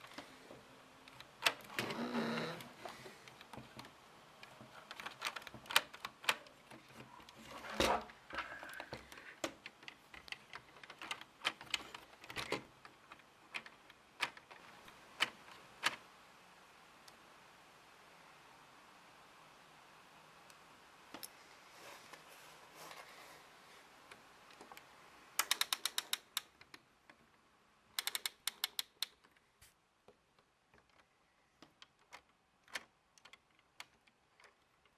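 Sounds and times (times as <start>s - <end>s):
plastic bricks clicking and clattering: 2.6s - 16.0s, 25.4s - 26.9s, 28.0s - 29.4s.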